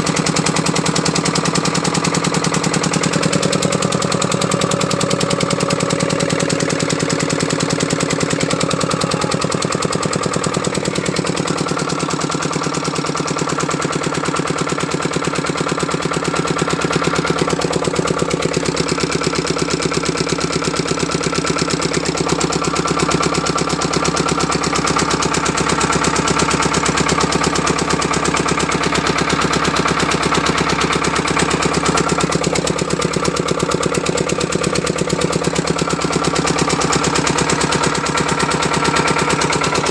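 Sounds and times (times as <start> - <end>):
generator engine running: 0.0 - 39.9.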